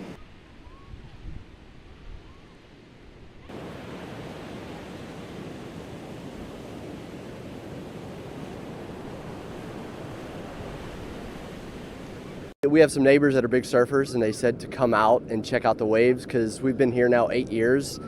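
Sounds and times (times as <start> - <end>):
ocean surf breaking: 3.5 - 12.6.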